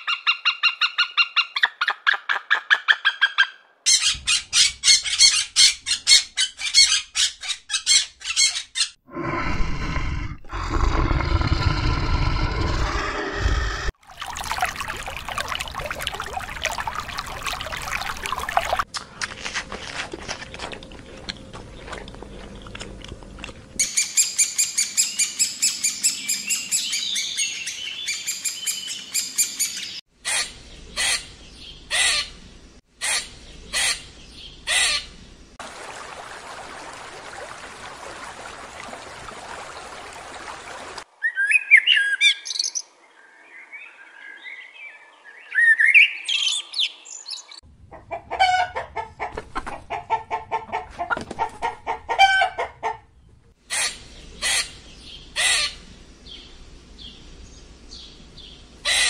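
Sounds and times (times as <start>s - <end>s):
sweeping bird calls: 41.2s - 47.6s
chicken clucking: 47.9s - 53.0s.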